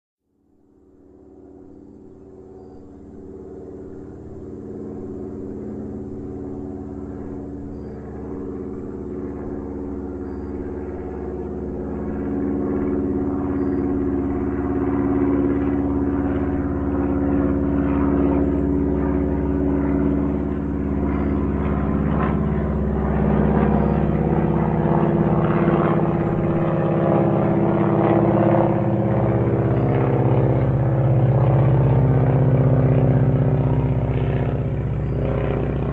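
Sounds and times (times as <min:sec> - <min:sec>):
propeller airplane engine: 0:00.3 - 0:35.9.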